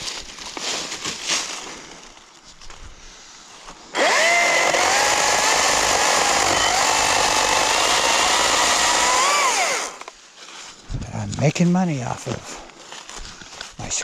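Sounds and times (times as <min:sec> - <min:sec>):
chainsaw cutting a log: 0:03.9 - 0:10.1.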